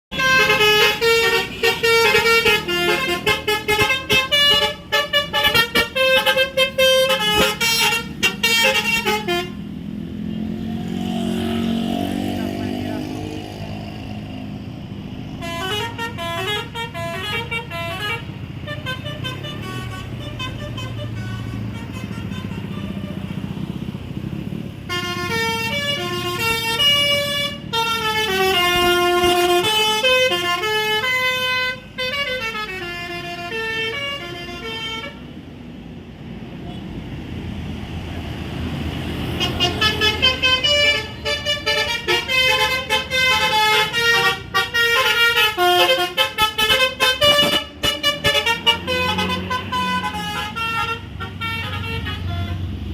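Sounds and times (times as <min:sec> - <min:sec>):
musical air horn playing tunes: 0:00.1 - 0:09.7, 0:15.4 - 0:23.3, 0:24.9 - 0:35.2, 0:39.4 - 0:52.7.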